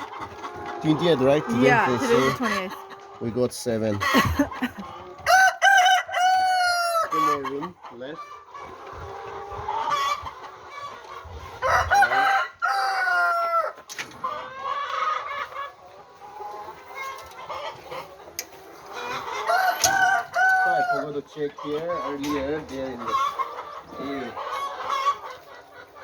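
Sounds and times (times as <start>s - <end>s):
hens clucking and calling: 0.0s - 26.0s.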